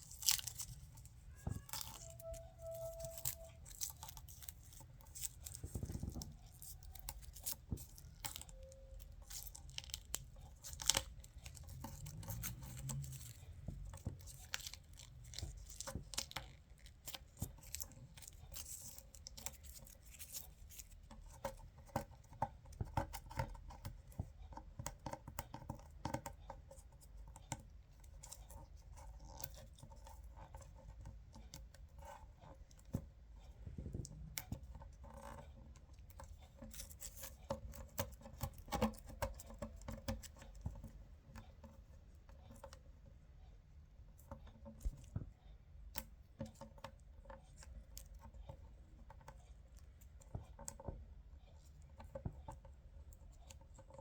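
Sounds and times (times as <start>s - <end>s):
small crackles and clicks: 0.0s - 42.8s.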